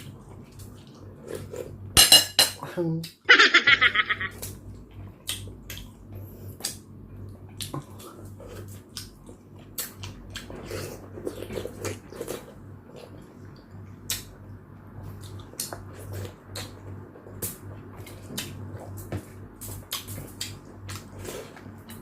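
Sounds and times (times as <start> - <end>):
steady low hum: 0.0 - 22.0
chewing and mouth smacks: 4.4 - 6.0, 6.6 - 14.4, 15.0 - 22.0.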